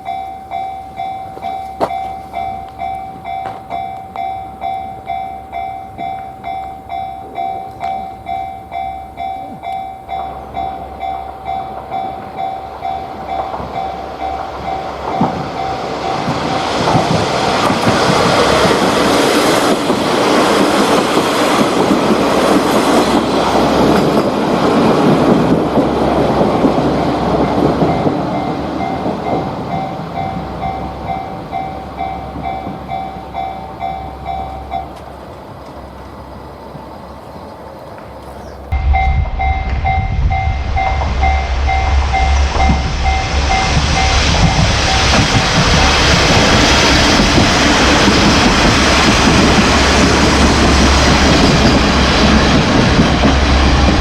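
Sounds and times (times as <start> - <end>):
level crossing alarm: 0.0 - 17.2, 38.7 - 49.1
railcar wheel and engine noise: 0.0 - 54.0.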